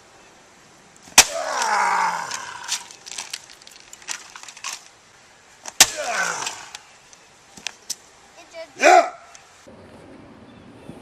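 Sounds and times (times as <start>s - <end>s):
broken pieces clattering: 2.3s - 4.9s.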